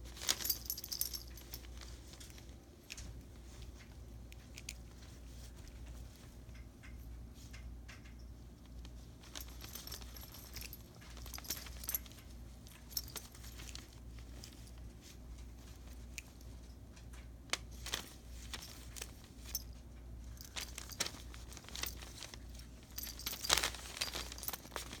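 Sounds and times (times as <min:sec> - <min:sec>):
tissue paper rustling and crinkling: 0:00.0 - 0:02.5, 0:20.4 - 0:25.0.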